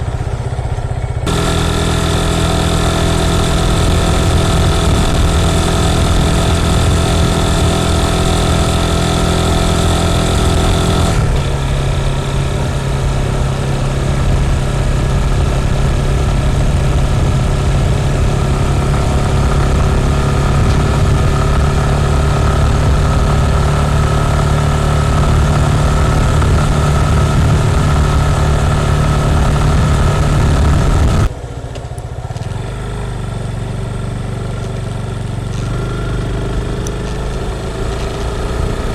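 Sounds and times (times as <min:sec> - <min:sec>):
motorcycle engine running: 0:00.0 - 0:38.9
wind noise: 0:02.4 - 0:31.4.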